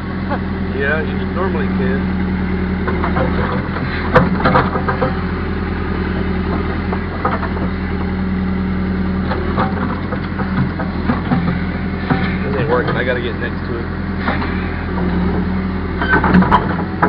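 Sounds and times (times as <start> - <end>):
diesel engine running: 0.0 - 17.0
short clanks: 2.8 - 5.3, 9.2 - 13.4, 16.0 - 17.0.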